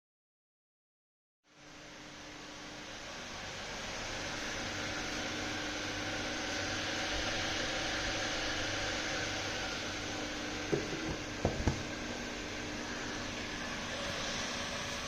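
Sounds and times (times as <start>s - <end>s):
small electric fan humming: 1.5s - 15.0s
light knocks: 10.7s - 11.9s.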